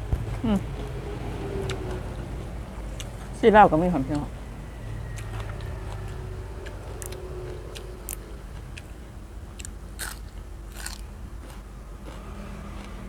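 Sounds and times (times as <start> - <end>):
person chewing food: 0.0 - 3.4, 4.8 - 13.0
small crunches: 9.6 - 13.0.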